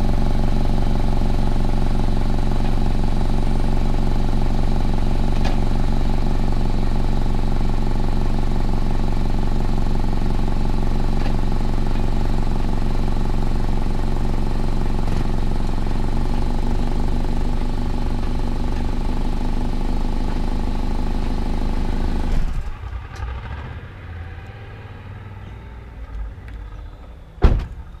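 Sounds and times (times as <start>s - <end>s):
car engine idling: 0.0s - 28.0s
loud thump: 27.4s - 27.9s.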